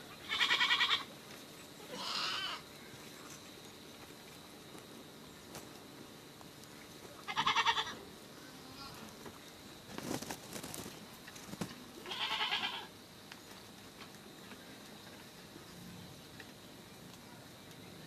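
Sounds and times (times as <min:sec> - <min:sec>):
goat bleating: 0:00.2 - 0:01.1, 0:01.9 - 0:02.6, 0:07.2 - 0:09.1, 0:12.0 - 0:12.9.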